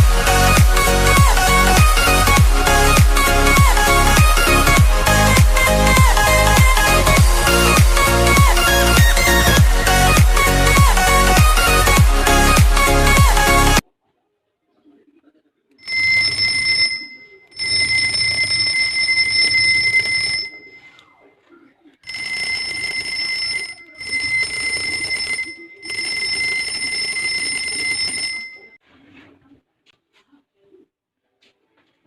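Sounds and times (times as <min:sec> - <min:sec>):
electric doorbell ringing: 0:15.9 - 0:20.8.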